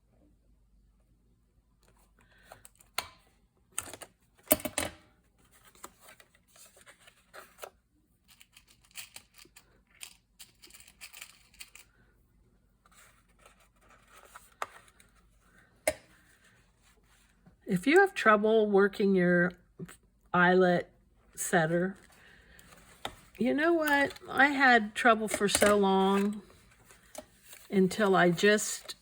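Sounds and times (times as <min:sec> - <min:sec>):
paper rustling: 0:25.5 - 0:29.0.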